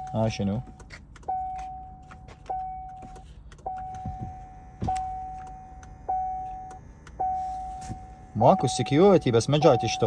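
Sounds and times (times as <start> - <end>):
car warning chime dinging: 0.0 - 10.0.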